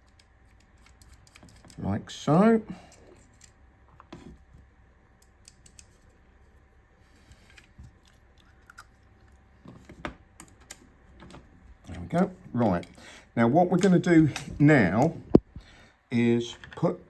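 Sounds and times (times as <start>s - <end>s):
rifle parts clicking: 0.0s - 1.8s, 2.8s - 4.2s, 5.2s - 6.1s.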